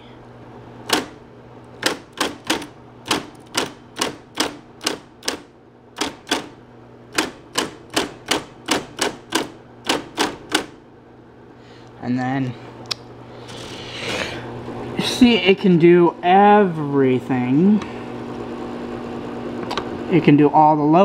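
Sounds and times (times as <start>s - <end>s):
typewriter motor hum: 0.8s - 10.8s, 13.4s - 14.0s
typewriter key strikes: 0.9s - 1.2s, 1.8s - 10.8s.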